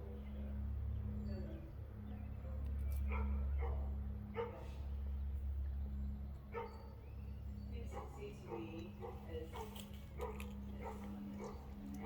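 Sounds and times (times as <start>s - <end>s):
steady low hum: 0.0s - 12.0s
dog barking: 3.1s - 4.8s, 6.5s - 6.8s, 7.9s - 12.0s.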